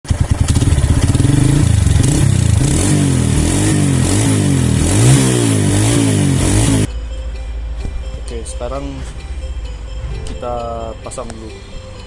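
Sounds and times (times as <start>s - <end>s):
motorcycle engine revving: 0.0s - 6.9s.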